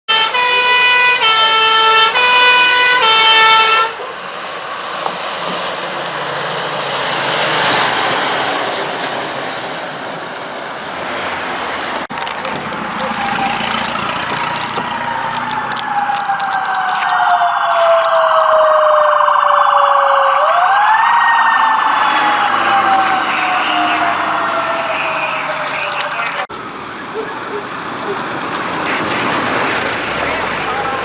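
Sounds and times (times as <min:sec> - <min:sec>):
fire engine two-tone warning: 0:00.1 - 0:10.8, 0:11.9 - 0:31.0
emergency vehicle passing: 0:00.1 - 0:31.0
siren falling in pitch: 0:13.0 - 0:25.6.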